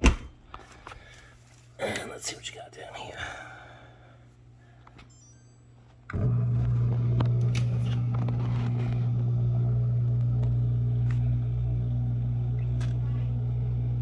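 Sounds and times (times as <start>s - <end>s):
dishwasher pump humming: 6.1s - 14.0s.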